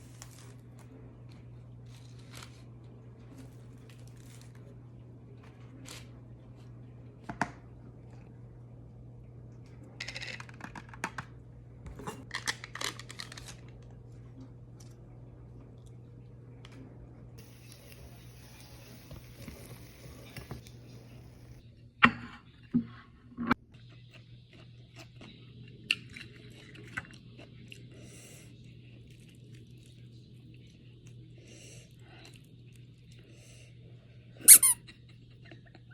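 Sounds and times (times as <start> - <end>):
rustling and handling noises: 0.0 - 6.9, 17.4 - 21.6
steady low hum: 14.1 - 21.6
person chewing crunchy food: 17.4 - 21.6.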